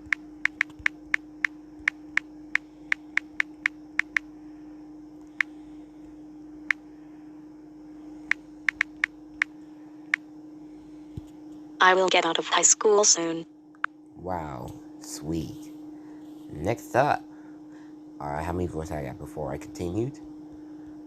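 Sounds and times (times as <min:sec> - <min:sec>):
phone keyboard clicks: 0:00.0 - 0:02.3, 0:02.9 - 0:04.2, 0:08.7 - 0:09.5
steady low hum: 0:00.0 - 0:21.0.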